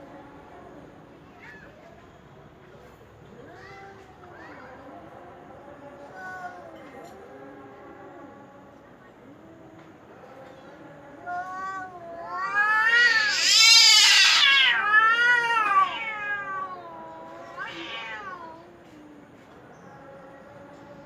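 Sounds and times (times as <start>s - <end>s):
cat yowling: 11.0s - 18.8s.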